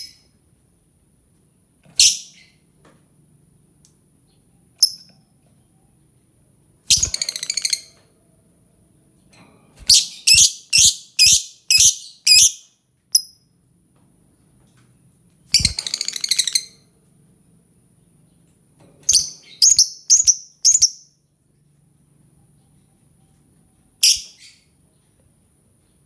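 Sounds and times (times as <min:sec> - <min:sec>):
lovebird chattering: 0:06.9 - 0:07.9, 0:09.9 - 0:12.6, 0:15.6 - 0:16.8, 0:19.1 - 0:21.0, 0:24.0 - 0:24.5
lovebird shrill calls: 0:06.9 - 0:07.9, 0:09.9 - 0:12.6, 0:15.5 - 0:16.8, 0:19.1 - 0:21.0, 0:24.0 - 0:24.6.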